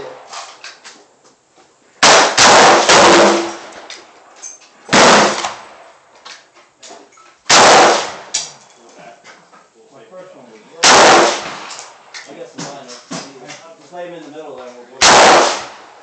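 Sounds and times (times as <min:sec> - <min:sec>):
rifle shots with ringing decay: 0:02.0 - 0:03.8, 0:04.9 - 0:05.9, 0:07.5 - 0:08.4, 0:10.8 - 0:12.1, 0:15.0 - 0:16.0.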